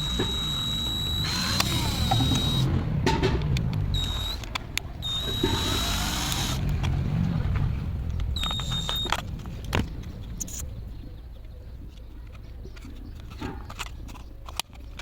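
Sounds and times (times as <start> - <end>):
clicks: 0.0 - 2.7
power tool whining: 0.0 - 2.7, 4.0 - 6.6, 8.4 - 9.1
low rumble: 0.0 - 11.9.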